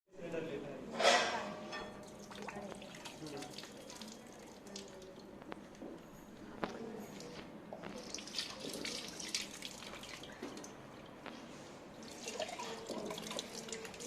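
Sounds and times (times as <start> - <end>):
water dripping and splashing: 2.0 - 5.8, 6.7 - 14.0.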